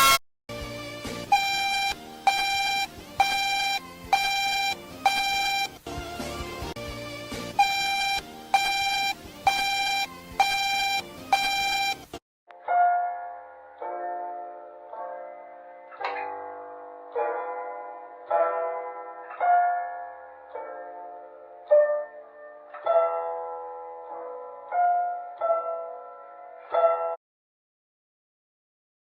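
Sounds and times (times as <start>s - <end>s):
harsh electronic alarm beeps: 1.3s - 5.8s, 7.6s - 12.1s.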